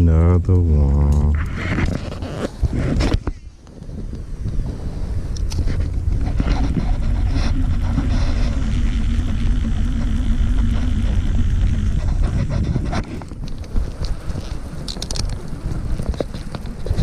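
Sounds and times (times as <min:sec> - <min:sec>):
wind rumble on microphone: 0:00.8 - 0:17.0
boat motor humming: 0:04.3 - 0:17.0.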